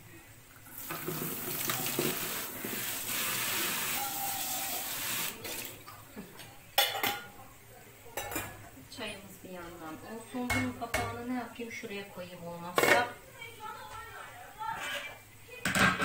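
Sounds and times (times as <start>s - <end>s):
tap running water: 0.6s - 6.0s.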